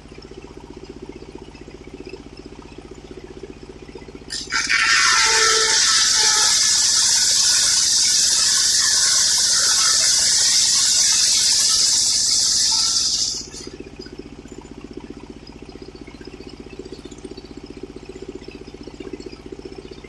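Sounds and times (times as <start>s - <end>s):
circular saw cutting wood: 4.3s - 13.7s
saw running with pulsing drone: 4.3s - 13.8s.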